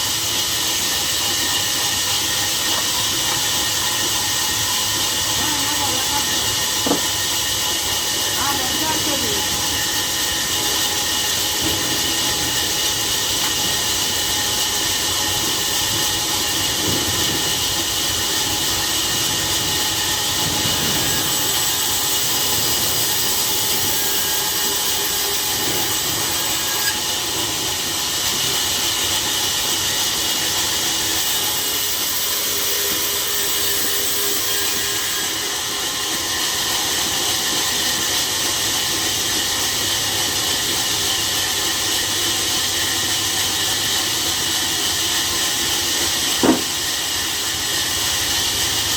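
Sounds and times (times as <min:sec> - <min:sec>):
sawmill machinery hissing: 0:00.0 - 0:48.9.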